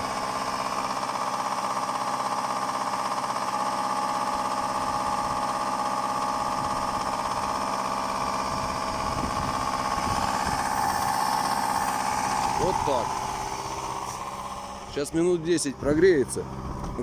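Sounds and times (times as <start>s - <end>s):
car engine with fast knock: 15.9s - 17.0s.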